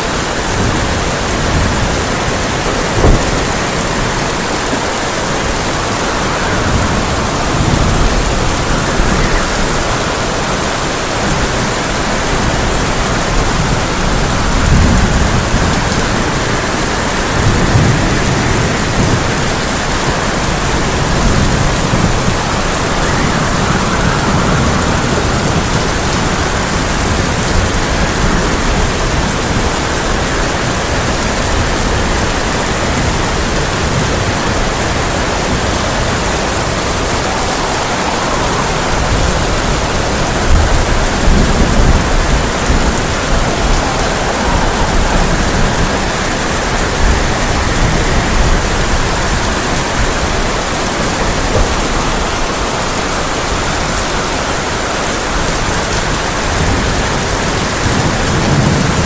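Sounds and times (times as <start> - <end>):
heavy rain on a tin roof: 0.0 - 59.0
low thunder rumbles: 0.0 - 59.0.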